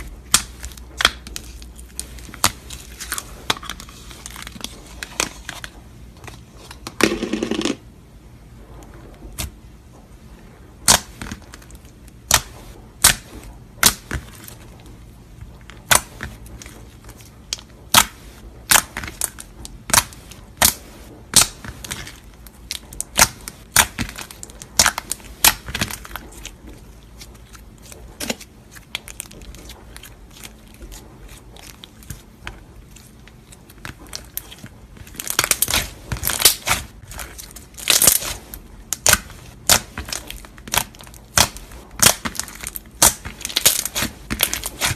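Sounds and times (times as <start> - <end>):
slime popping and crackling: 10.8 - 14.7, 15.4 - 44.9.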